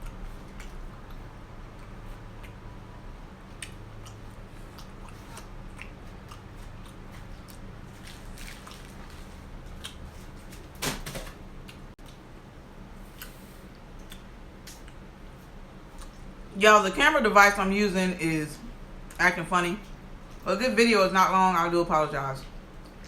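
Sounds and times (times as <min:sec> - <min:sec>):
chewing tortilla chips: 0:00.0 - 0:02.7, 0:03.4 - 0:10.7, 0:13.0 - 0:16.4.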